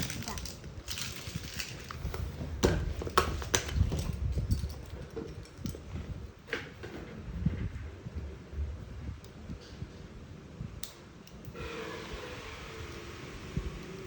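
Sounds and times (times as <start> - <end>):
plastic rustling and bumping: 0.0 - 7.8.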